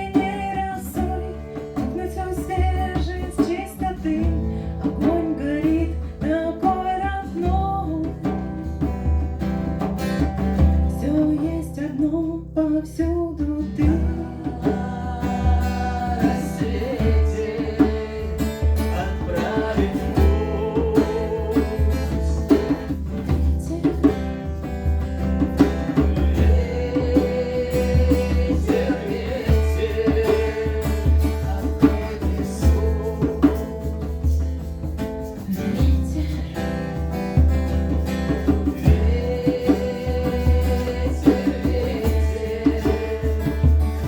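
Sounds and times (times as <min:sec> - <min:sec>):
plucked acoustic guitar: 0:00.0 - 0:44.0
steady bass: 0:04.0 - 0:44.0.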